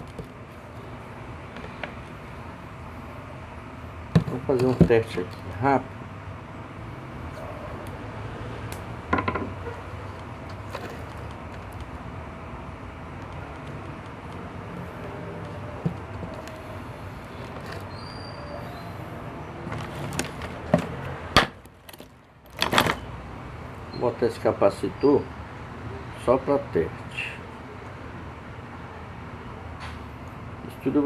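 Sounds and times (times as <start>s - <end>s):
parts clicking and knocking: 0.0s - 3.1s, 3.9s - 5.8s, 7.0s - 23.2s.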